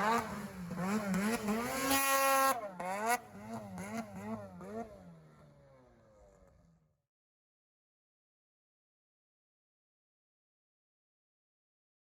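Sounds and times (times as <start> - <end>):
snowmobile engine revving: 0.0 - 6.6.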